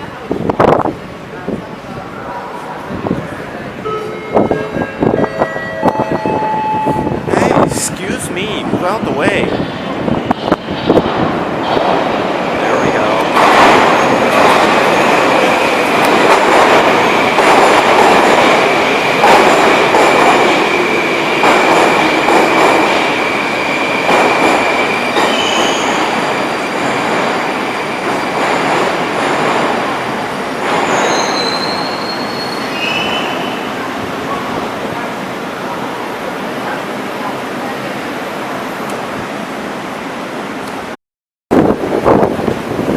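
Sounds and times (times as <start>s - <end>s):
train wheels rumbling: 2.6s - 38.1s
high wheel squeal: 24.7s - 26.0s, 30.9s - 33.6s.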